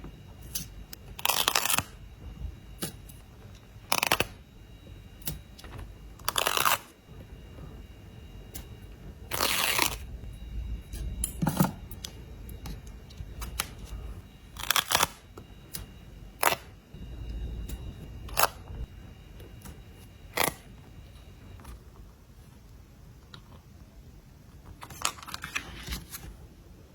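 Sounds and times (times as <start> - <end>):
sticker peeling crackle: 0.4 - 2.0, 8.5 - 16.8.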